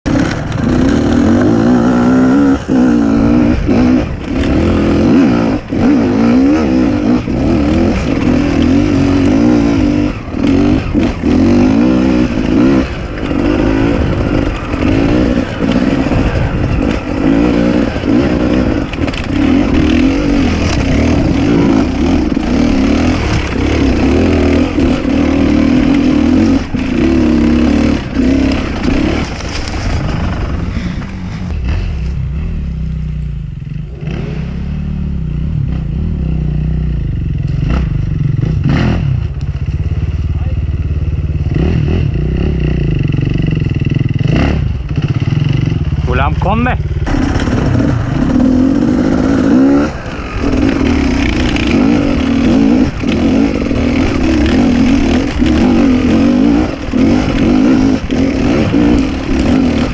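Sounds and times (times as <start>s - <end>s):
dirt bike engine revving: 0.1s - 59.9s
knocks and clatter: 44.9s - 59.9s.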